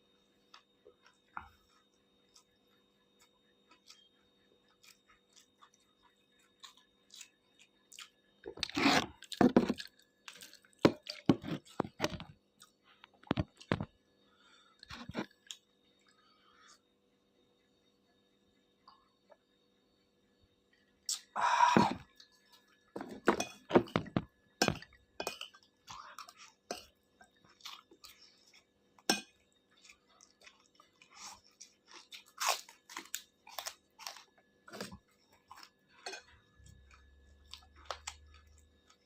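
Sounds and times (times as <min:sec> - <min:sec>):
crackly chewing of fried noodles: 0:00.4 - 0:13.9, 0:24.8 - 0:39.0.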